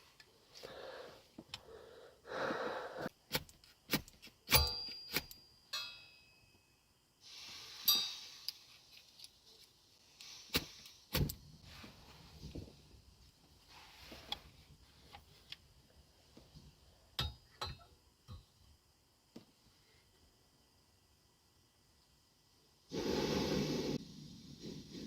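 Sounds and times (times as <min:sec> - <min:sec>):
bright metallic clinks: 0:04.5 - 0:06.8, 0:07.8 - 0:08.7.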